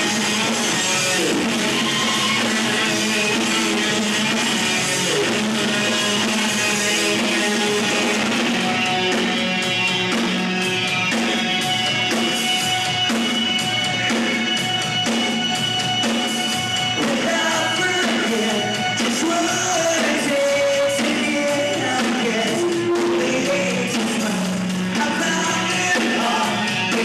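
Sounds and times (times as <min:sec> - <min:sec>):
rock band playing live: 0:00.0 - 0:27.0
person singing: 0:16.9 - 0:27.0.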